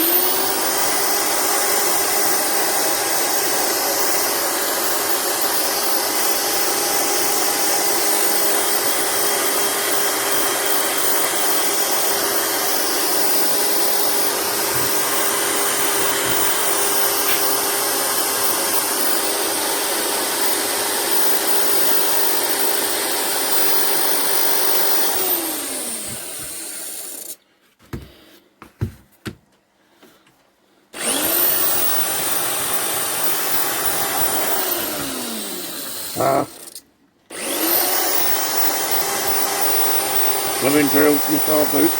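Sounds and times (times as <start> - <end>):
electric drill with wire brush: 0.0 - 27.4, 31.0 - 41.9
clicks: 14.3 - 17.6.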